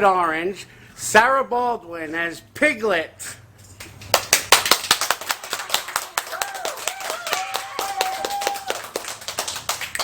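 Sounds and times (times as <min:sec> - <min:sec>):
group clapping: 0:03.8 - 0:10.0
high-pitched cheer: 0:05.6 - 0:09.1.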